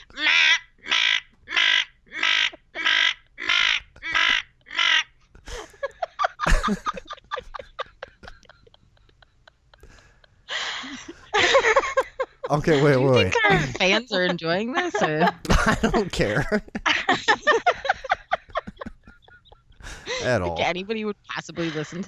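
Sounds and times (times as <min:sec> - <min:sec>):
crow-like caws: 0:00.1 - 0:05.2.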